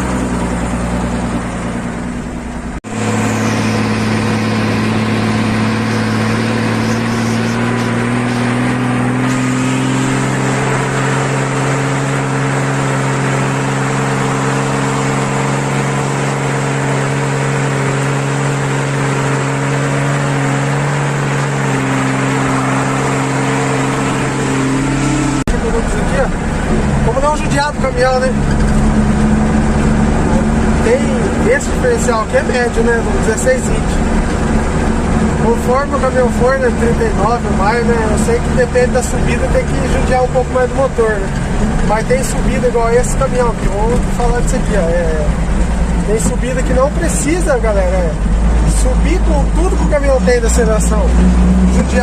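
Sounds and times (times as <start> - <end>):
exhaust growling: 0.0 - 52.0
truck diesel engine under load: 0.0 - 52.0.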